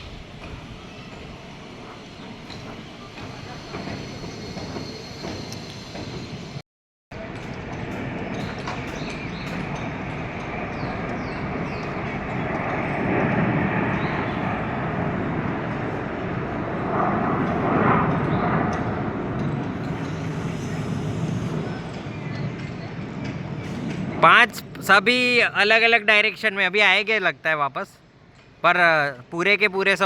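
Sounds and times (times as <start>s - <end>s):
jets flying past roaring: 7.2s - 26.5s.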